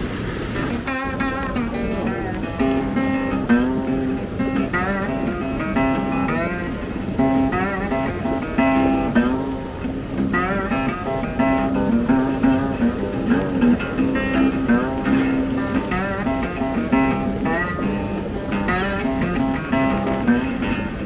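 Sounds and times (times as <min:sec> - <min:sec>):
guitar music: 0:00.6 - 0:21.0.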